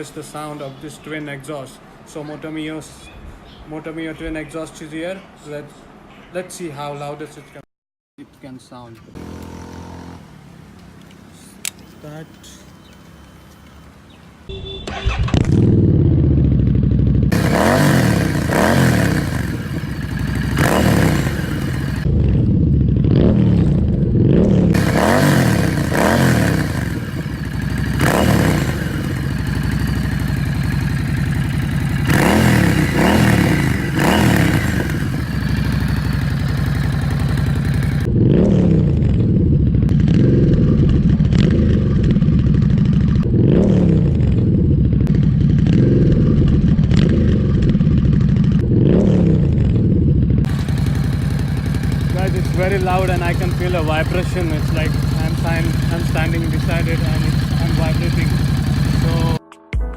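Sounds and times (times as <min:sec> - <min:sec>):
motorcycle engine revving: 0:09.1 - 0:10.6, 0:14.5 - 0:59.4.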